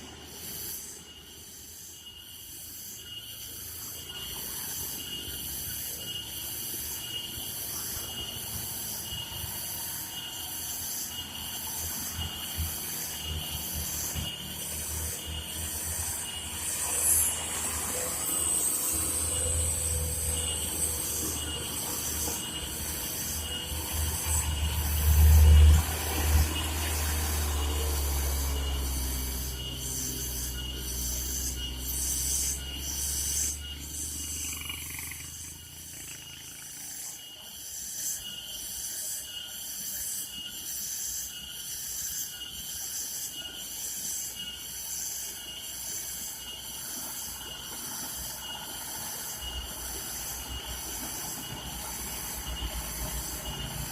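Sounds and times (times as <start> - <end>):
pulsing high hiss: 0.0 - 53.9
truck diesel engine labouring: 12.0 - 36.0, 48.9 - 53.9.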